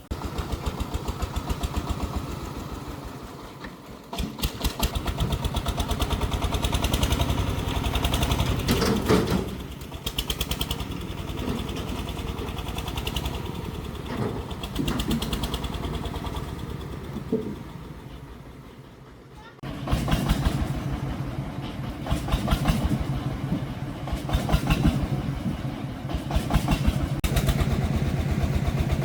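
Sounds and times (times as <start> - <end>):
diesel engine thumping: 0.0 - 29.0
clattering: 8.4 - 10.2.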